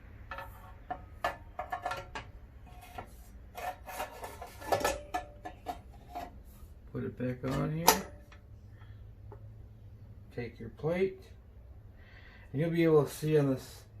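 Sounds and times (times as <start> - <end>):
saw blade handling clicks and scrapes: 0.2 - 6.4.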